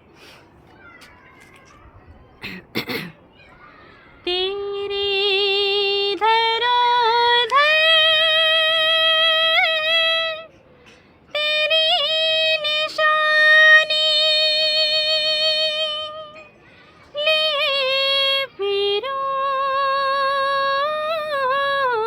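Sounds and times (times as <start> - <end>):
woman singing unaccompanied: 4.2 - 10.6, 11.2 - 22.0.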